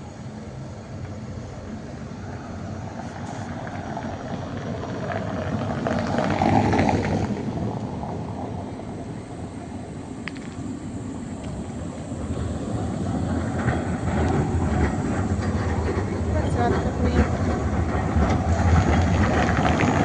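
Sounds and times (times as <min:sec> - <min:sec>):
street traffic: 0:00.0 - 0:20.0
vehicle passing close by: 0:01.6 - 0:10.0.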